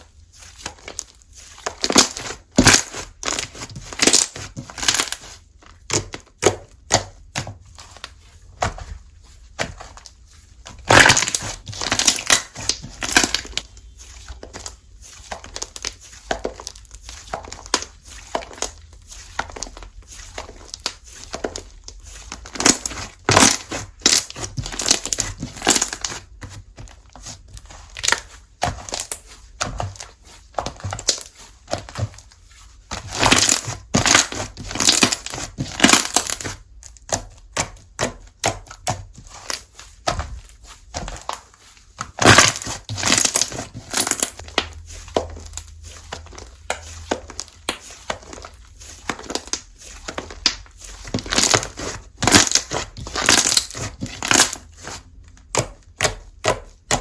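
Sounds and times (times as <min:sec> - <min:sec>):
slime crackling and popping: 0:01.7 - 0:07.4, 0:10.8 - 0:14.8, 0:15.4 - 0:26.4, 0:27.9 - 0:30.0, 0:33.0 - 0:39.8, 0:40.4 - 0:57.0.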